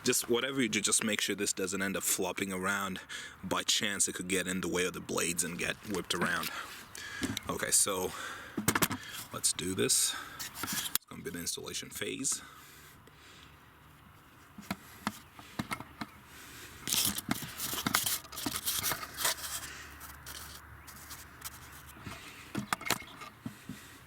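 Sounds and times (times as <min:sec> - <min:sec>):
plastic parts scraping and rubbing: 0:05.2 - 0:11.0, 0:14.2 - 0:24.0
plastic parts clicking into place: 0:08.6 - 0:09.0, 0:16.8 - 0:19.6, 0:20.3 - 0:23.4.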